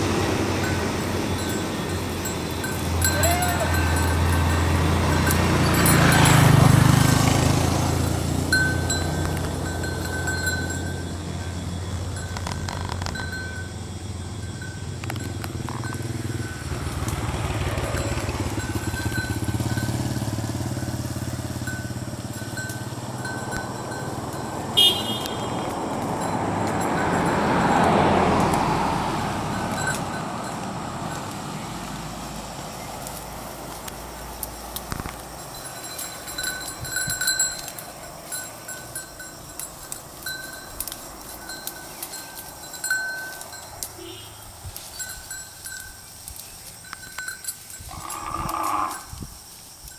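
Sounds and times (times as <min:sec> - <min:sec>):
vehicle passing by: 0:00.0 - 0:49.4
motorbike engines: 0:00.0 - 0:49.9.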